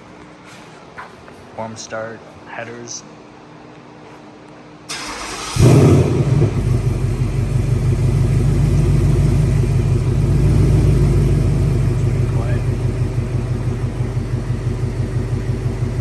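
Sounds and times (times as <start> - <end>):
car engine idling: 4.9 - 16.0.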